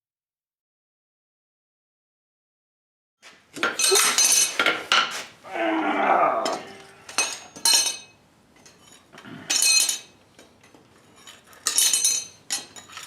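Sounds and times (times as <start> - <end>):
metal objects clanking: 3.6 - 5.2, 6.3 - 13.0.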